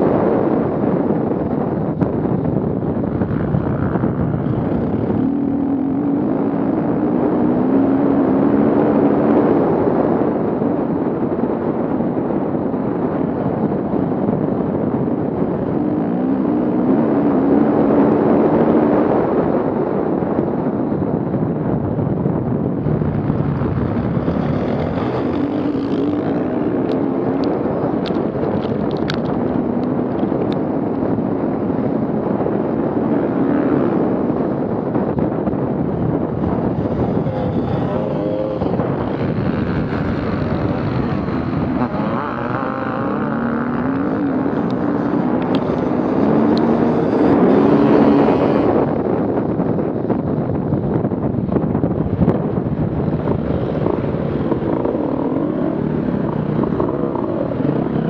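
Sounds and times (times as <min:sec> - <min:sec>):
off-road vehicle engine revving: 0:03.2 - 0:09.5, 0:22.9 - 0:30.6, 0:32.2 - 0:49.2.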